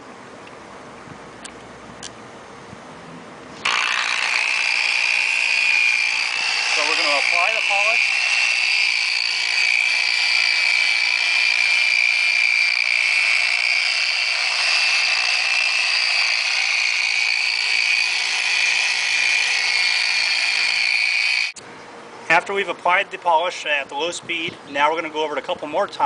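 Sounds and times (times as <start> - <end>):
polisher high whine: 3.6 - 21.6.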